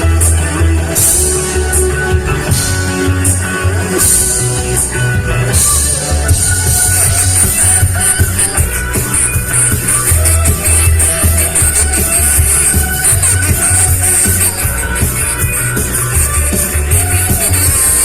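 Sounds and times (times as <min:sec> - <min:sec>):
rock band playing live: 0:00.0 - 0:18.0
cymbals: 0:00.9 - 0:18.0.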